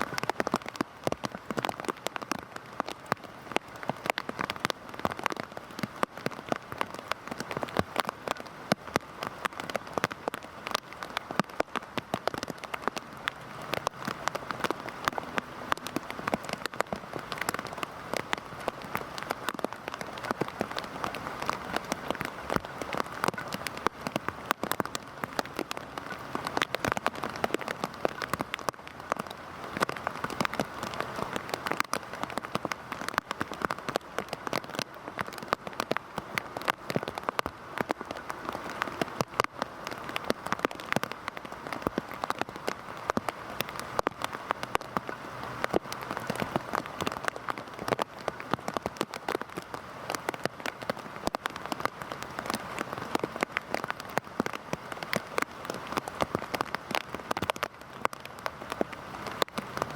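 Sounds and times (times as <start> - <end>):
heavy rain falling: 0.0 - 59.9.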